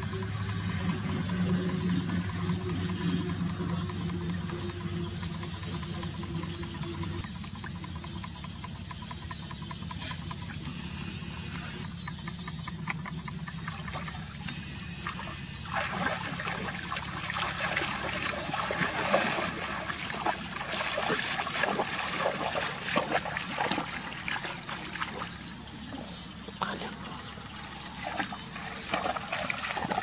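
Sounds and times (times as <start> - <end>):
water trickling and splashing: 13.6 - 26.1, 27.4 - 30.0.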